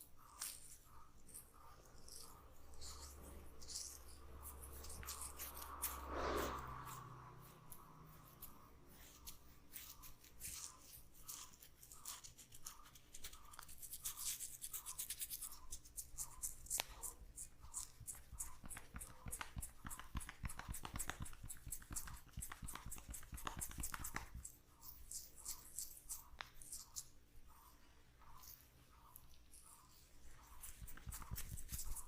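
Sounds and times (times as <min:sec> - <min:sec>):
hands rubbing oiled hair: 0:17.6 - 0:27.7, 0:28.3 - 0:32.0.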